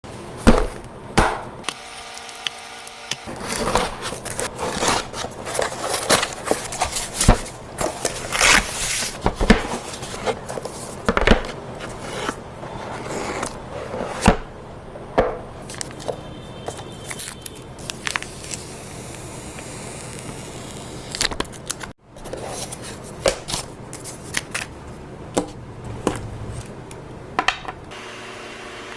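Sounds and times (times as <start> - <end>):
box being unpacked: 3.2 - 14.5.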